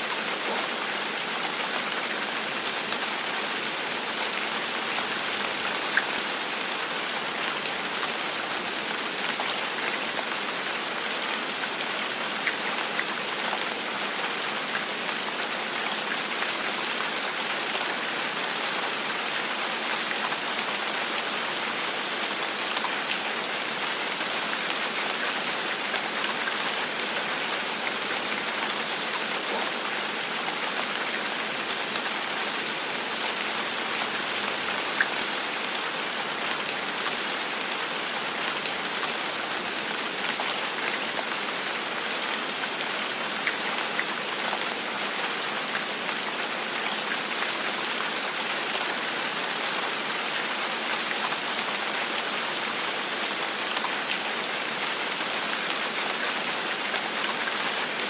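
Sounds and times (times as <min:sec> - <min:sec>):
gentle rain falling: 0:00.0 - 0:58.0.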